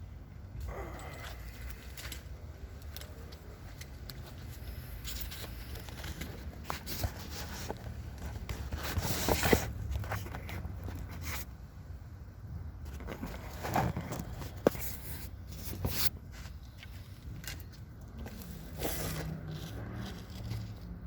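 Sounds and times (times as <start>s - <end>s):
bucket scraping through dirt: 18.3s - 21.0s.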